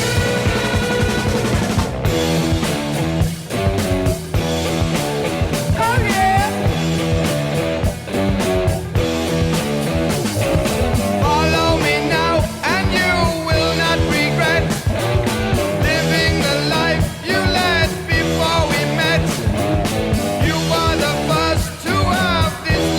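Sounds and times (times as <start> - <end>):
rock music with electric guitar: 0.0 - 22.9
person singing: 5.8 - 6.7, 11.2 - 15.1, 15.8 - 19.6, 20.4 - 22.9.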